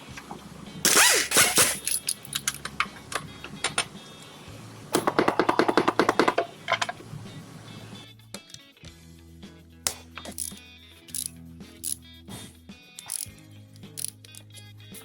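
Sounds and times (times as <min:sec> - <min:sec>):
background music: 0:00.0 - 0:15.0
ratchet wrench clicking: 0:00.9 - 0:03.9, 0:10.2 - 0:12.0, 0:13.0 - 0:14.7
metal hand tools clattering: 0:01.2 - 0:03.9.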